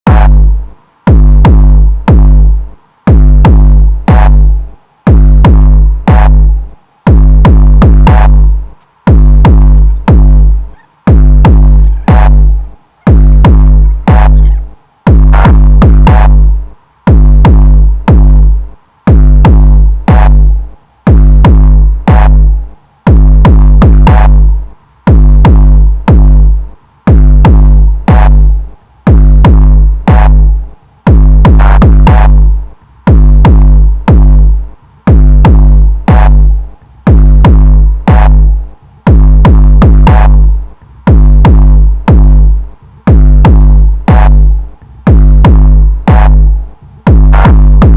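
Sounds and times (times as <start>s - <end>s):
electronic music with drum machine: 4.0s - 14.7s, 45.1s - 46.5s, 47.1s - 47.9s.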